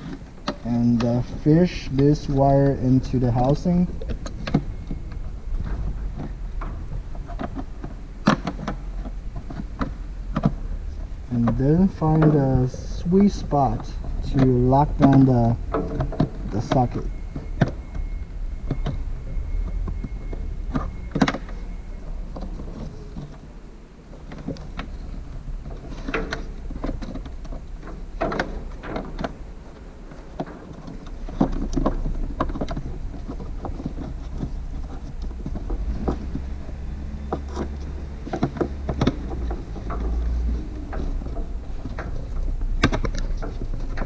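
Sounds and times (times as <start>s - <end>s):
low rumble: 0.7s - 15.0s
plastic clicks and knocks: 3.4s - 10.6s, 30.2s - 44.0s.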